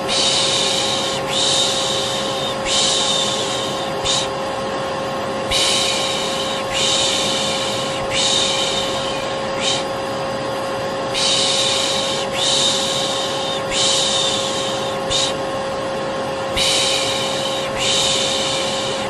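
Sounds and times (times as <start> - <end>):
vacuum cleaner motor humming: 0.0 - 19.0
person shushing: 5.5 - 9.9, 11.2 - 15.4.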